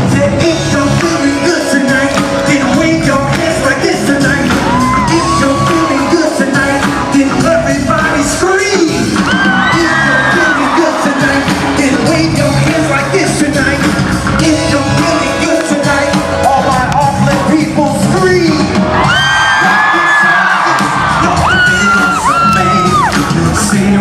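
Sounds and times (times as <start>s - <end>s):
loud music with singing: 0.0s - 24.0s
crowd yelling and whooping: 4.0s - 13.1s, 18.8s - 23.8s.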